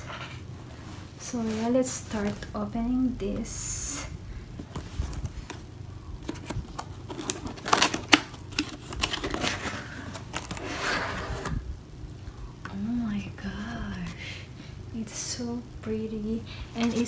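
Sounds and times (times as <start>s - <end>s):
rustling: 0.1s - 2.7s, 3.3s - 11.6s
cardboard box being opened: 6.2s - 11.6s.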